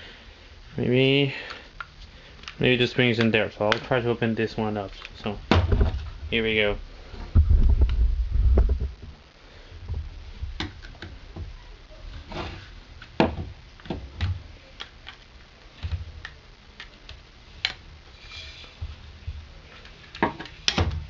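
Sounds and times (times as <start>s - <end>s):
low handling bumps: 7.2s - 9.2s.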